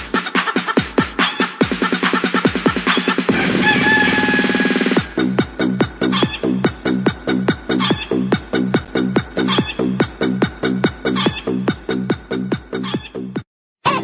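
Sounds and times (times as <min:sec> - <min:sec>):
looped chicken clucks: 0:00.2 - 0:04.6, 0:07.8 - 0:08.2, 0:09.4 - 0:09.8
bright chicken call: 0:00.2 - 0:05.2, 0:06.1 - 0:06.6, 0:07.7 - 0:08.2, 0:09.4 - 0:09.9, 0:11.1 - 0:11.6, 0:12.8 - 0:13.3.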